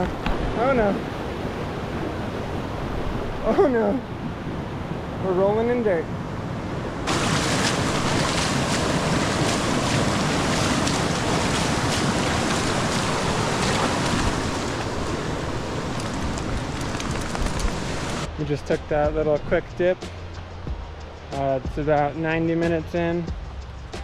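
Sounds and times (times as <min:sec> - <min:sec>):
rushing creek water: 0:07.0 - 0:19.6.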